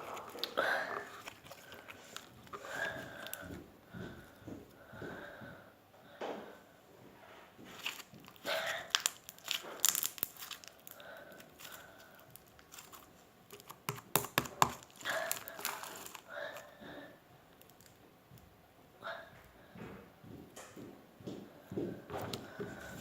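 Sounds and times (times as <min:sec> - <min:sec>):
crunchy slime crackling and popping: 0:00.0 - 0:03.5, 0:07.7 - 0:16.7, 0:17.5 - 0:18.0.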